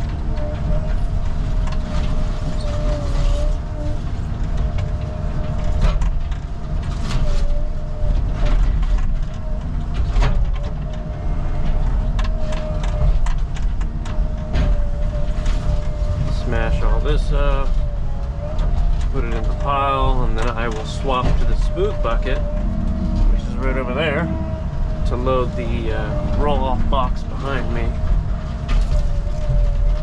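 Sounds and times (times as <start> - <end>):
excavator diesel engine: 0.0 - 30.0
hydraulic whine: 0.0 - 30.0.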